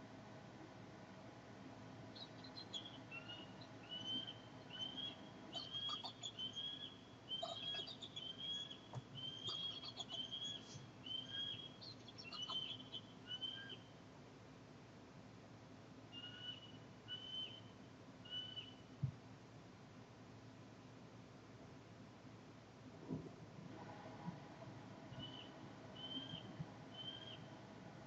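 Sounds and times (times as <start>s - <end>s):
eagle whistled chirps and squeals: 2.2s - 13.8s, 16.2s - 17.7s, 18.3s - 18.8s, 25.2s - 26.4s, 27.0s - 27.5s.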